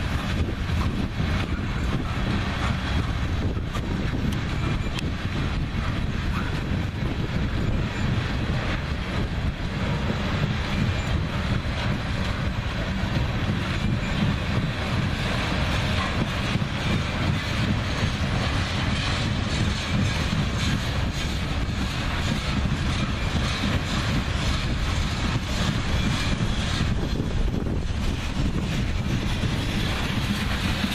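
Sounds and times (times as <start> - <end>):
clicking over rail joints: 0.0 - 30.9
train wheels rumbling on rail: 0.0 - 30.9.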